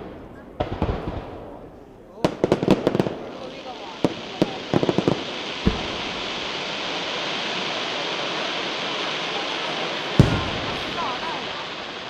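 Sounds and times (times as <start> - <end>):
firework cracks: 0.0 - 12.0
steady hiss: 1.4 - 12.0
firework boom: 4.1 - 8.4, 10.1 - 12.0.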